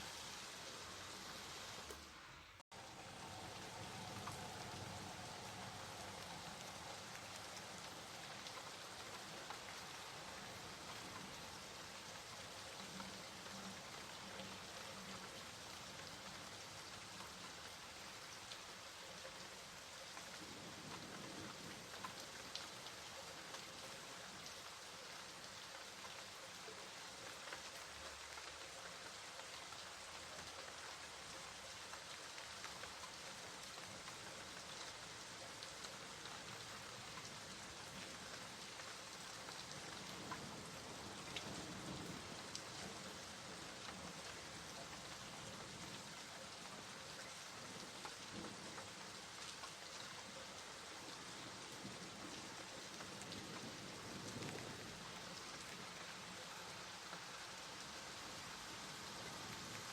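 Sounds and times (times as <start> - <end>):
rain falling: 0.0 - 59.9.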